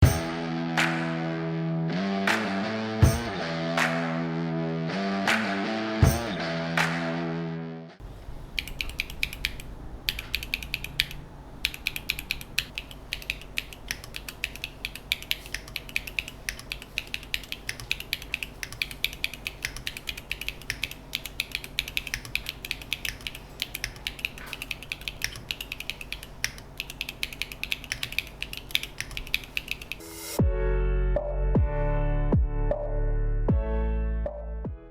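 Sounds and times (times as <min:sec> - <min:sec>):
mechanical keyboard typing: 0:08.5 - 0:30.0.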